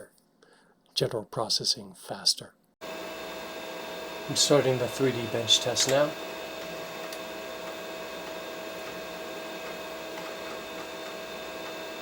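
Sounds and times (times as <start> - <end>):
desktop computer fans humming: 2.8 - 12.0.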